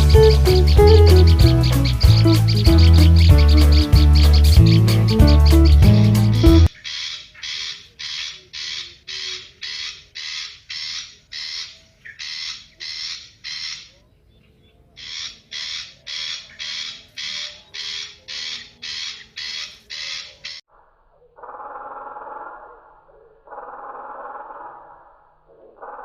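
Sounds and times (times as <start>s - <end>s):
harsh rasping warbler call: 0.0s - 13.9s, 15.0s - 20.6s.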